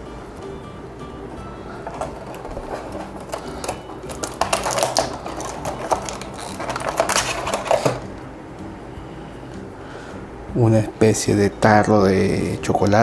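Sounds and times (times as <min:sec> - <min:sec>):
plastic packaging crinkling: 0:01.7 - 0:08.3
plastic toys clicking: 0:01.8 - 0:08.2.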